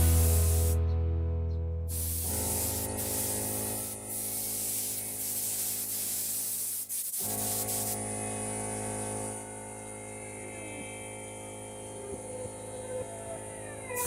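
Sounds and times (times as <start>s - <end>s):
compressed air spraying hiss: 0.0s - 0.8s, 1.9s - 8.0s
steady low hum: 0.0s - 0.8s, 1.9s - 14.0s.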